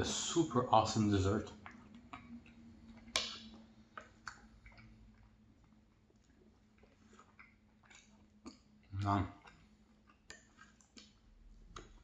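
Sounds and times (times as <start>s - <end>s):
quiet chewing: 0.0s - 12.0s.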